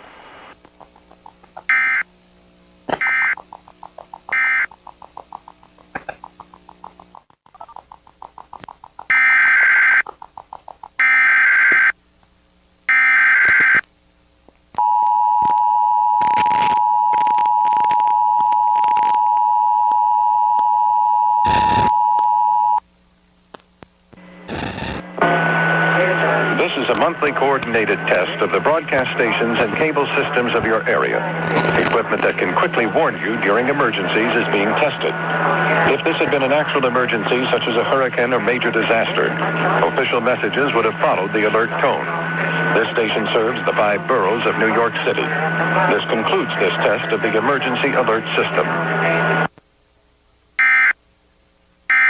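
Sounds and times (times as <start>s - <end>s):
crackles: 0.0s - 12.5s, 13.3s - 15.6s, 16.2s - 20.6s, 21.4s - 22.3s, 23.4s - 26.0s, 26.6s - 30.0s, 30.6s - 32.8s
rapid clicks: 0.6s - 1.8s, 2.9s - 11.2s
screeching data bursts: 1.0s - 2.1s, 2.9s - 11.9s
short beeps: 3.0s - 3.4s, 14.8s - 22.8s.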